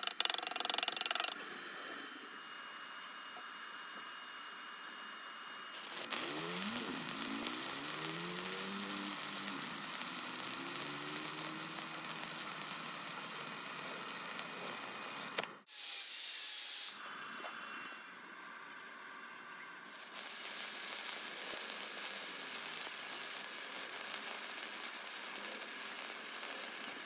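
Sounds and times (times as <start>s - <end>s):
welding arc crackling and sizzling: 5.7s - 18.6s, 19.8s - 27.0s
loud hiss: 19.9s - 27.0s.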